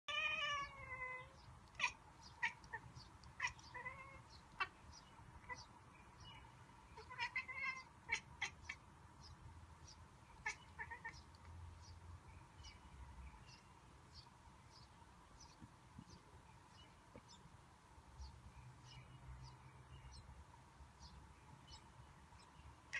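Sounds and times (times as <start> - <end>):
cat chattering: 0.1 - 4.8, 5.4 - 5.7, 7.0 - 8.8, 10.4 - 11.3.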